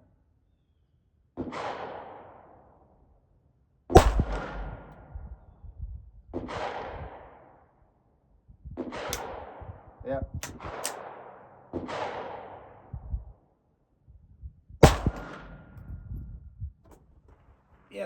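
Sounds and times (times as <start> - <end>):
gunshots with echoing tail: 1.4 - 2.6, 3.9 - 5.5, 6.3 - 7.6, 8.8 - 13.4, 14.8 - 16.3.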